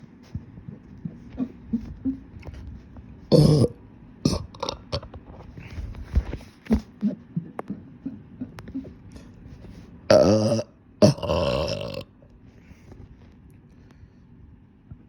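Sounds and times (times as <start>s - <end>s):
throat and mouth sounds: 0.3s - 12.0s
person burping: 3.3s - 5.1s, 10.1s - 12.1s.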